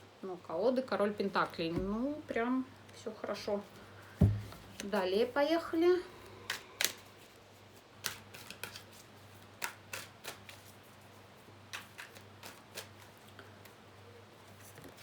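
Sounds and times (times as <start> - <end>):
steady low hum: 1.7 - 6.8
cards being shuffled: 6.5 - 13.8.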